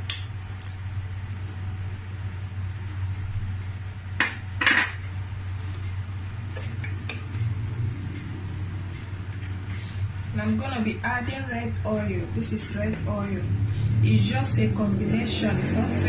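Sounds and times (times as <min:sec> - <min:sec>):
steady low hum: 0:00.0 - 0:16.0
kitchenware clinking and knocking: 0:04.2 - 0:05.0.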